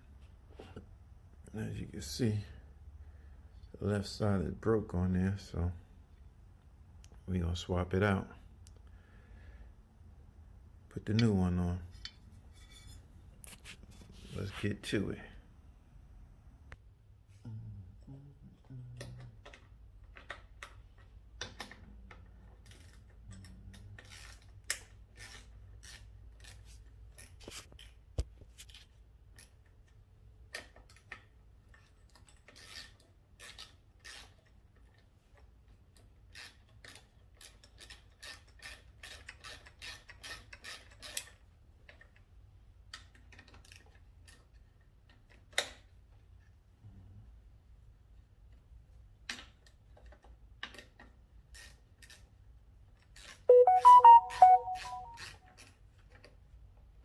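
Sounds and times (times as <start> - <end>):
faint low hum: 14.4 - 19.7.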